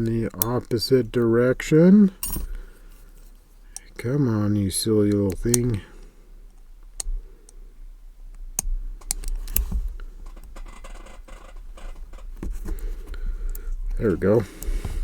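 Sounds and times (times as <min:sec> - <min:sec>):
metallic clicks of padlock: 0:00.0 - 0:00.8.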